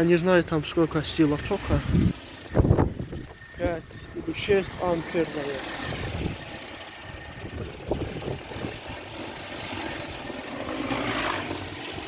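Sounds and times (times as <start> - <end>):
storm wind buffeting microphone: 1.3 - 11.0.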